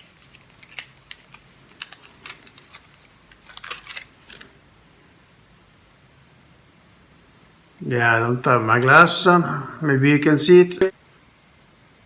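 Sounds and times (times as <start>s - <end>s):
razor and packaging clicking: 0.0s - 4.5s.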